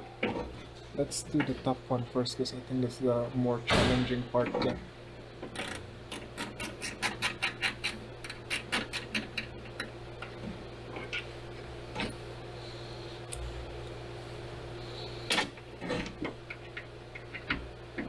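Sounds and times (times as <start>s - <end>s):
ratcheting screwdriver clicking: 5.6s - 9.9s.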